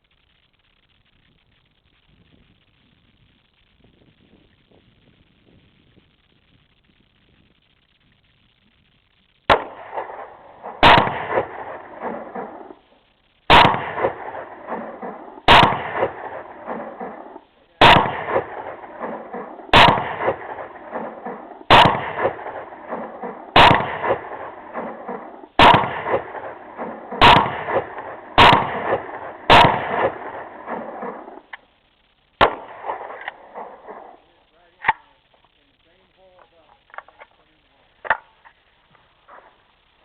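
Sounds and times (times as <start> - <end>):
pistol shots with echo: 9.5 - 12.8, 13.5 - 31.5, 32.4 - 35.1.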